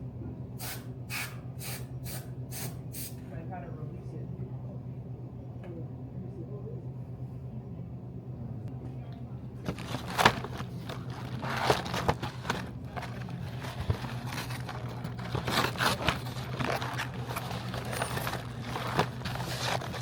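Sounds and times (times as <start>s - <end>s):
steady low hum: 0.0s - 20.0s
plastic wrappers crinkling: 9.6s - 20.0s
scrapes and light knocks: 9.7s - 20.0s.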